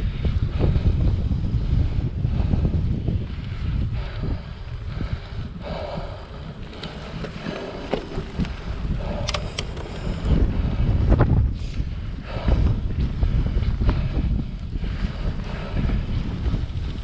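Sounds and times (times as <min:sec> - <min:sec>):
wind buffeting microphone: 0:00.0 - 0:17.0
sharp clicks: 0:08.4 - 0:10.0.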